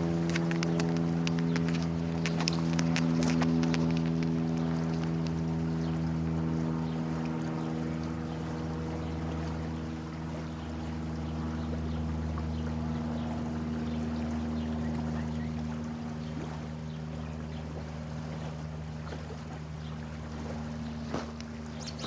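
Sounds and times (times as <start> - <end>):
motor running: 0.0 - 22.0
flowing water hiss: 20.5 - 22.0.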